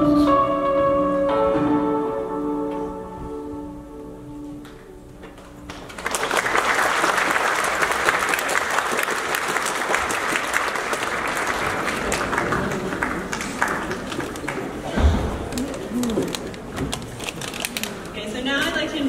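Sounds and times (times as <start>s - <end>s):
music: 0.0s - 6.1s
audience applause: 5.7s - 17.7s.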